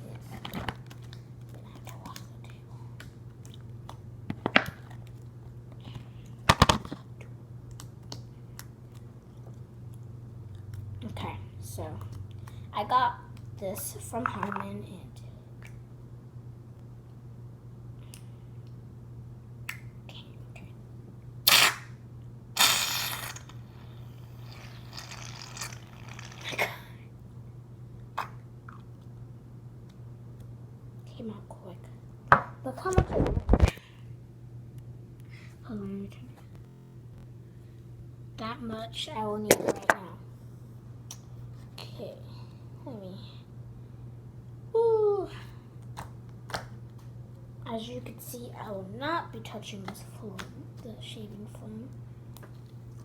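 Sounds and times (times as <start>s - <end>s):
low hum: 31.8s - 41.6s.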